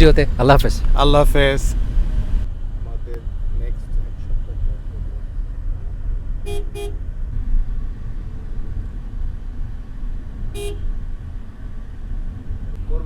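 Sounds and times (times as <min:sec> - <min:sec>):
road traffic rumble: 0:00.0 - 0:13.0
vehicle horn short toots: 0:06.4 - 0:07.0, 0:10.6 - 0:10.9.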